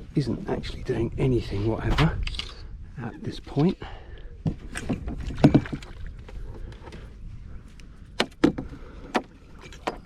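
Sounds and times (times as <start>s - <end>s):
sharp knocks and clicks in boat: 4.4s - 7.1s, 8.1s - 10.0s.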